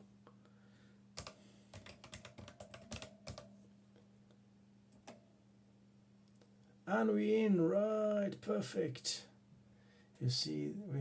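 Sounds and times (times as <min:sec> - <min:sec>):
faint electrical hum: 0:00.0 - 0:11.0
computer keyboard keystrokes: 0:01.2 - 0:03.5.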